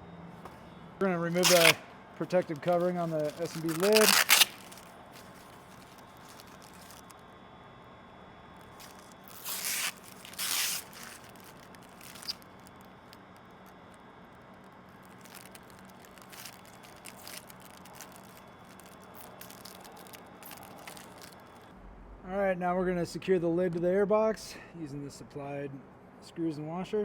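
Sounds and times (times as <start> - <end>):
handling ticks and rustles: 1.3 - 7.1, 8.6 - 13.9, 14.5 - 21.7
plastic film ripping: 1.3 - 7.1, 8.6 - 13.8, 14.6 - 21.7.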